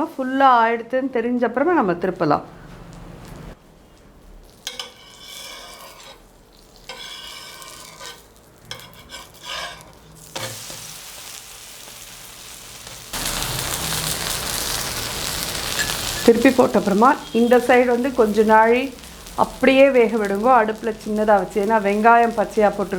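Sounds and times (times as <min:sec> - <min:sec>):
food sizzling on griddle: 0:04.2 - 0:22.9
spatula scraping griddle: 0:04.4 - 0:19.3.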